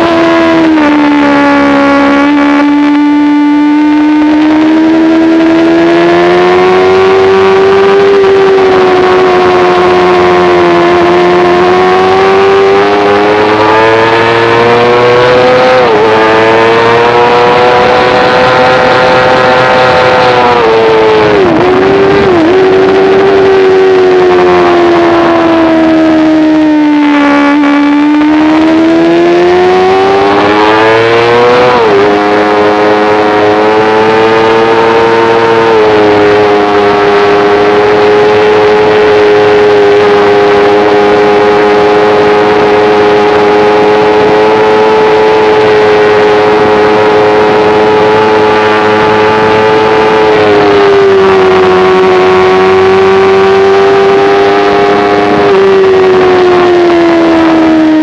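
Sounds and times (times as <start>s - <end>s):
motorcycle engine revving: 0.0s - 58.0s
wind rush: 15.3s - 34.2s.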